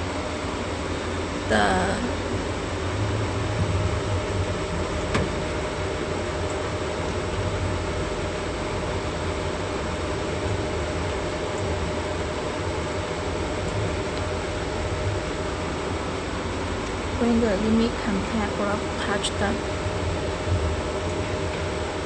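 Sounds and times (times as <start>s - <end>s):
fan and machine hum: 0.0s - 22.0s.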